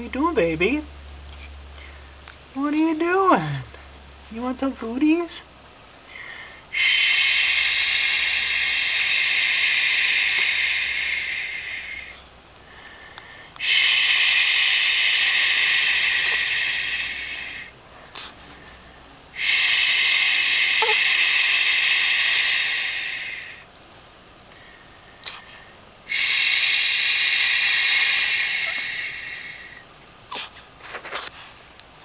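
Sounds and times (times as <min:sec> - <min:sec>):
baby fussing: 0:19.8 - 0:21.5, 0:30.3 - 0:30.6.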